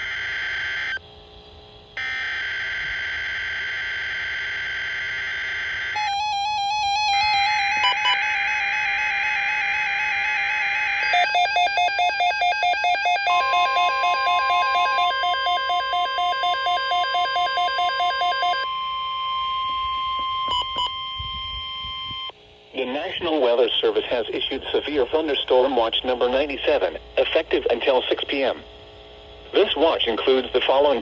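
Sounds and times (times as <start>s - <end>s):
steady high tone: 2.0s - 27.3s
electronic alert tones: 6.0s - 22.3s
pulsing beep: 6.0s - 22.3s.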